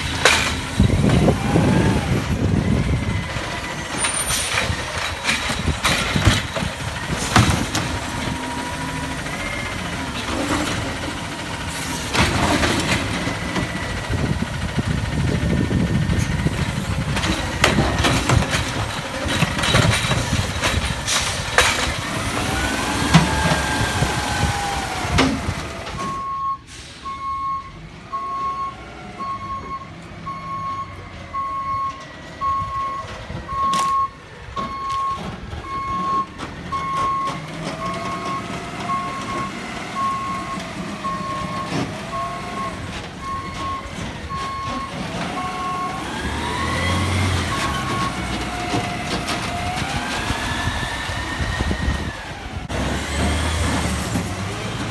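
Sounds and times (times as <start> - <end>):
truck engine running: 0.0 - 26.3
garbage truck clanking and knocking: 0.0 - 54.9
reversing alarm beeping: 26.0 - 48.4.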